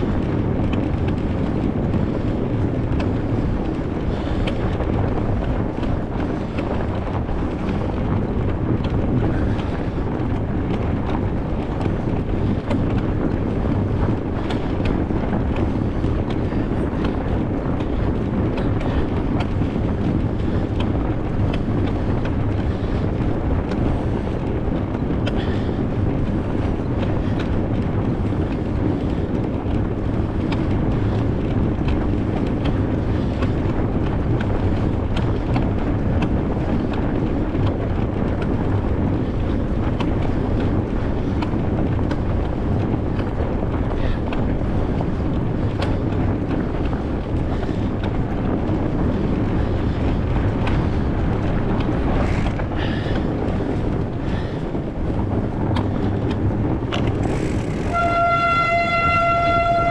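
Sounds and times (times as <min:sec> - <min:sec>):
wind buffeting microphone: 0:00.0 - 0:59.9
tyres crunching snow: 0:55.3 - 0:59.9.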